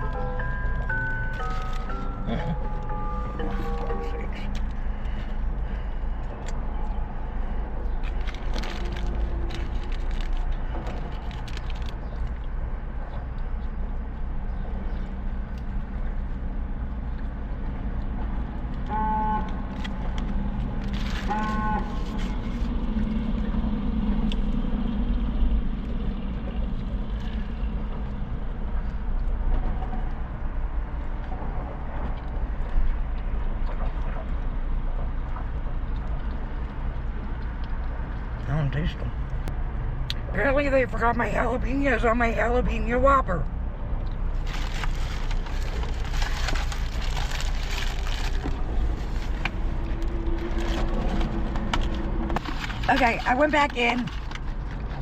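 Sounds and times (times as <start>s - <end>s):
rustling and crunching: 0.6s - 5.4s, 7.9s - 13.3s, 19.5s - 23.4s, 44.2s - 55.0s.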